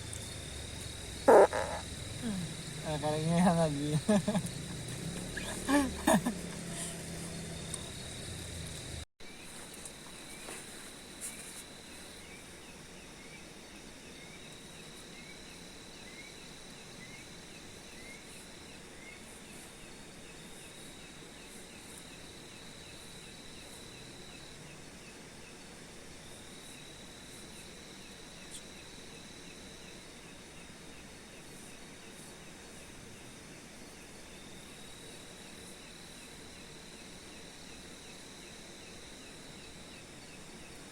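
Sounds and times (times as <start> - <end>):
insect trilling: 0.0 - 9.0.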